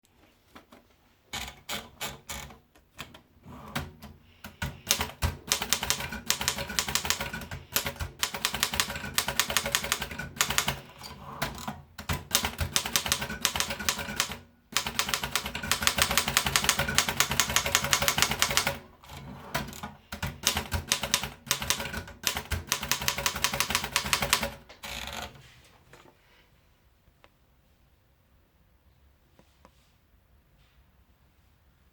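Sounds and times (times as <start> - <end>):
manual typewriter keystrokes clacking: 1.3 - 25.3.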